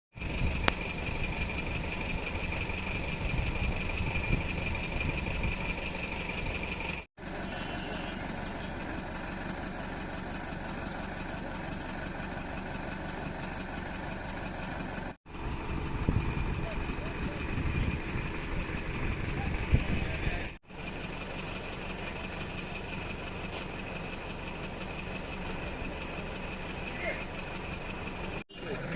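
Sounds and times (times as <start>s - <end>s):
vehicle engine idling: 0.1s - 28.9s.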